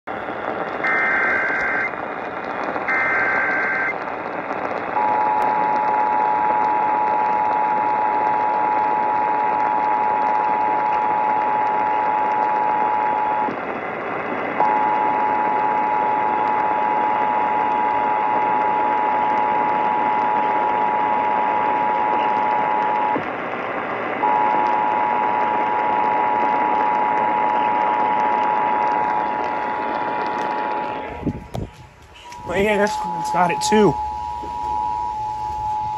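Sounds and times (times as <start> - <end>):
radio hiss: 0.1 - 35.9
rasping digital data bursts: 0.8 - 2.0, 32.2 - 35.9
harsh two-tone attention signal: 32.2 - 35.9.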